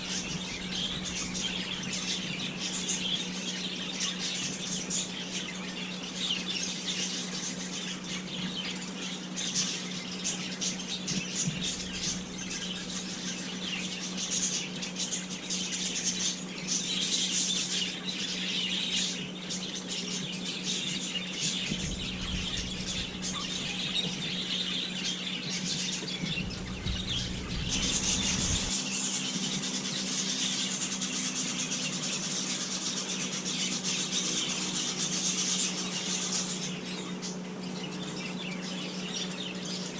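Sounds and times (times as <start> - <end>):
small birds chirping: 0.0 - 39.9
steady low hum: 0.0 - 39.9
short low rumbles: 21.6 - 24.8, 25.8 - 28.8.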